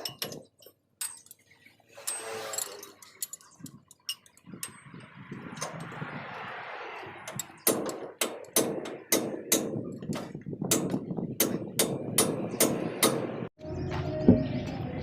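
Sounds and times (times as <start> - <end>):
hammer striking metal: 7.3 - 13.5.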